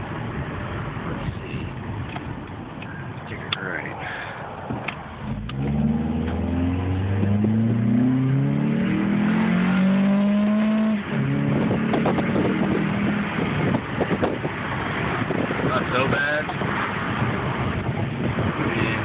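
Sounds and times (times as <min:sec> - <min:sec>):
car engine accelerating: 0:04.8 - 0:19.0.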